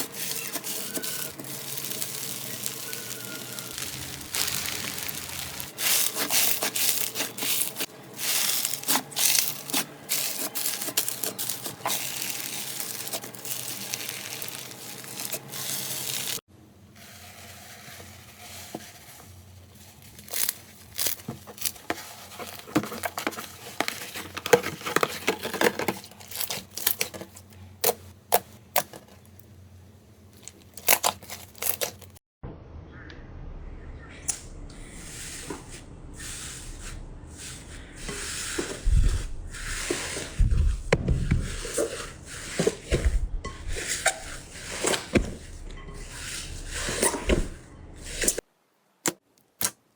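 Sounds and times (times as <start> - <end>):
slime crackling and crunching: 0.0 - 16.5, 19.6 - 29.4, 30.3 - 32.2.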